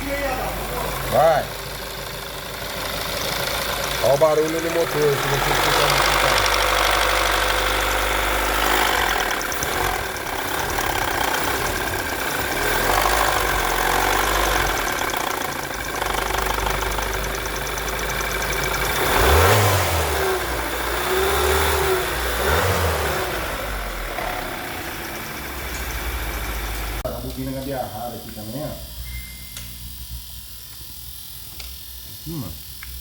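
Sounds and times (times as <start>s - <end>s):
car engine revving: 0.0s - 27.8s
car engine with abnormal noise: 0.0s - 33.0s.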